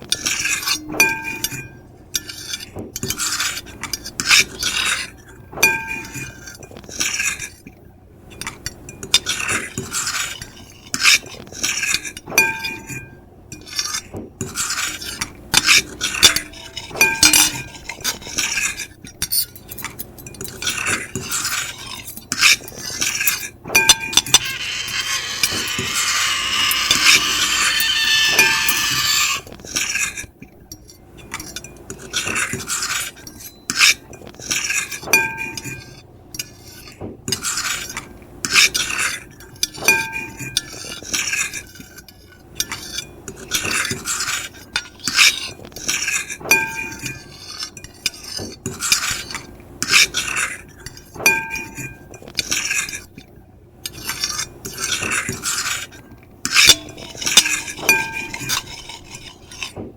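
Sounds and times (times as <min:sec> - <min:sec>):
fork and knife scraping plate: 0:00.0 - 0:07.7, 0:08.4 - 0:53.3, 0:53.9 - 0:59.8
high-pitched squeaks: 0:23.8 - 0:29.6.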